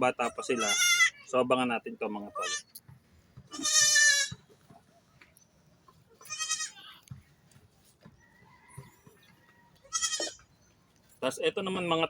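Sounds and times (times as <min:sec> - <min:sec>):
goat kid bleating: 0:00.1 - 0:01.4, 0:02.2 - 0:02.7, 0:03.4 - 0:04.4, 0:06.2 - 0:07.0, 0:09.8 - 0:10.5.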